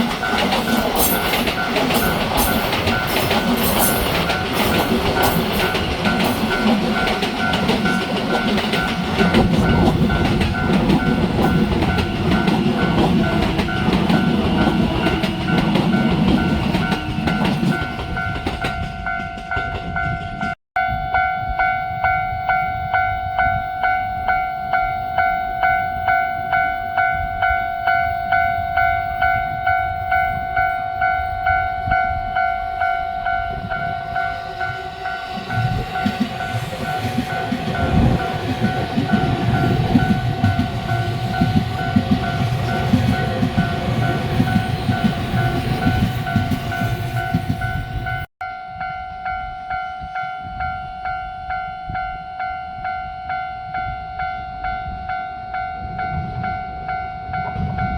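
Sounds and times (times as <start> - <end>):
train wheels clattering over rail joints: 0.0 - 20.6
level crossing warning bell: 0.0 - 57.9.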